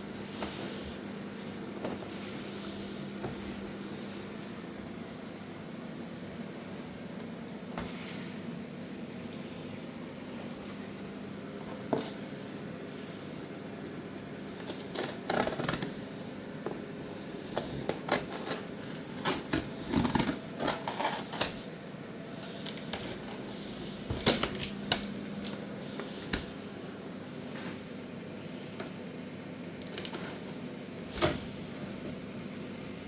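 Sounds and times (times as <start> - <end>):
steady low hum: 0.0 - 33.0
hands handling packaging: 22.4 - 26.6, 29.7 - 31.6.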